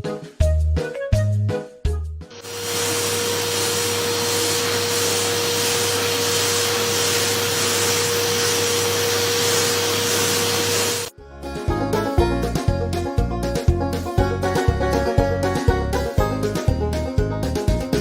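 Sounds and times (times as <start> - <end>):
electric fan motor whooshing: 2.4 - 11.1.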